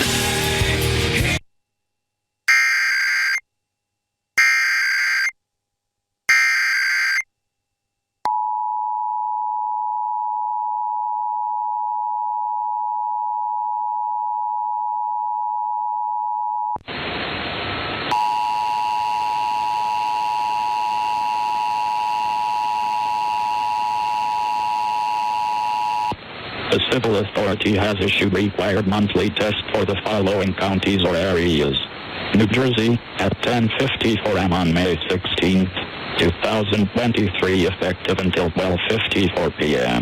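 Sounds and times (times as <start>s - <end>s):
screeching digital bursts: 2.5s - 3.4s, 4.4s - 5.3s, 6.3s - 7.2s
two-tone attention signal: 2.5s - 3.4s, 4.4s - 5.3s, 6.3s - 7.2s.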